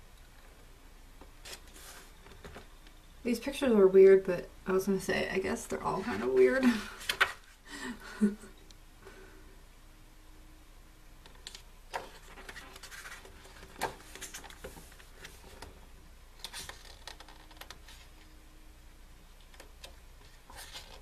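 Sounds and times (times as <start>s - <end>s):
photobook pages turning: 5.9s - 7.6s, 11.4s - 15.8s, 16.4s - 18.1s, 19.5s - 21.0s.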